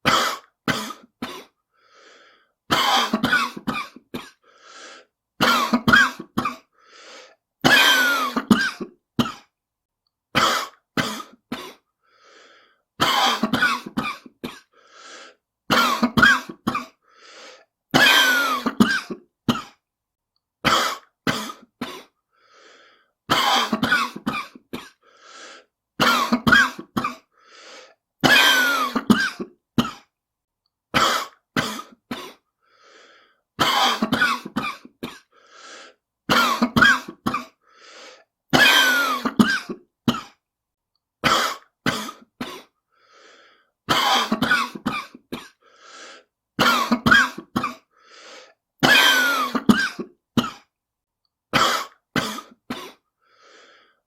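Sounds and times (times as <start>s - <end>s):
person coughing harshly: 0.0s - 1.6s, 2.7s - 4.5s, 5.4s - 6.7s, 7.6s - 9.5s, 10.3s - 11.9s, 13.0s - 14.8s, 15.7s - 17.0s, 17.9s - 19.8s, 20.6s - 22.2s, 23.3s - 25.1s, 26.0s - 27.3s, 28.2s - 30.1s, 30.9s - 32.4s, 33.6s - 35.4s, 36.3s - 37.6s, 38.5s - 40.4s, 41.2s - 42.8s, 43.9s - 45.7s, 46.6s - 47.9s, 48.8s - 50.7s, 51.5s - 53.1s.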